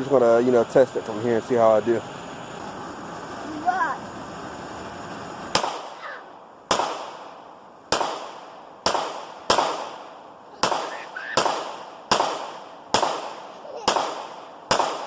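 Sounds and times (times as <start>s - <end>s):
pistol shots echoing: 5.5s - 6.0s, 6.7s - 15.0s.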